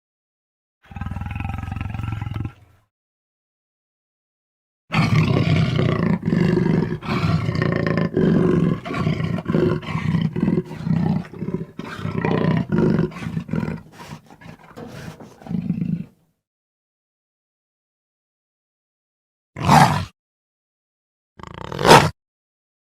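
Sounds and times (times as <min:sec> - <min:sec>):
mountain lion calling: 0:08.8 - 0:16.1.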